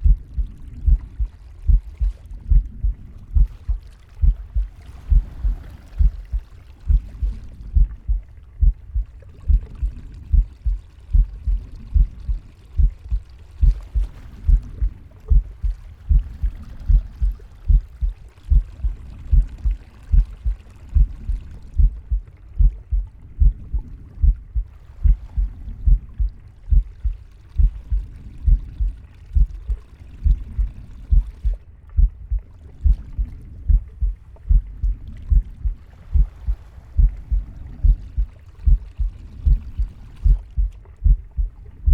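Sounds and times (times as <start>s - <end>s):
heartbeat thumps: 0.0s - 41.9s.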